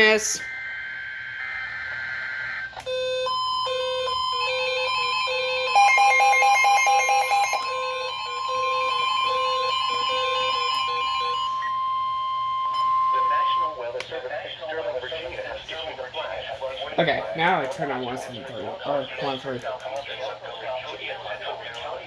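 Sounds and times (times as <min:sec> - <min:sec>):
two-tone beeping alarms: 0:00.0 - 0:14.0
steady high alert tone: 0:02.3 - 0:13.9.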